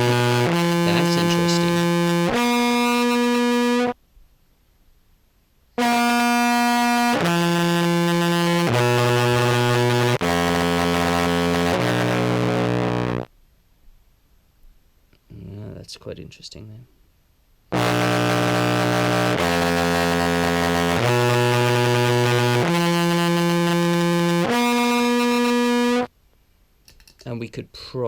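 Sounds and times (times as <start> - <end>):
distorted contrabass clarinet notes: 0.0 - 3.9, 5.8 - 13.3, 17.8 - 26.1.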